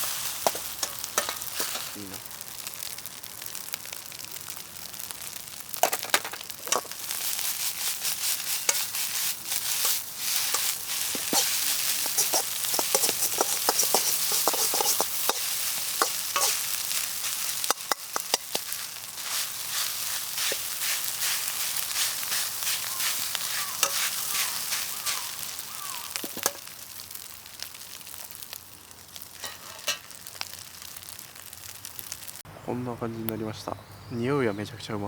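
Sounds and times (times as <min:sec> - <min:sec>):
rice sizzling in a wok: 0:00.0 - 0:32.5
spatula scraping and clicking on pan: 0:00.3 - 0:02.0, 0:08.6 - 0:09.1, 0:09.7 - 0:16.7, 0:17.6 - 0:18.8, 0:23.5 - 0:25.2, 0:26.2 - 0:26.6, 0:29.4 - 0:30.2.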